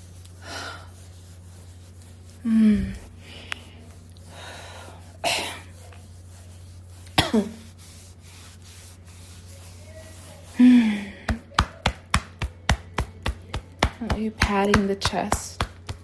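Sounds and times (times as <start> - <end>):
steady low hum: 0.0 - 16.0
woman groaning and sighing: 2.4 - 3.1, 10.6 - 11.4.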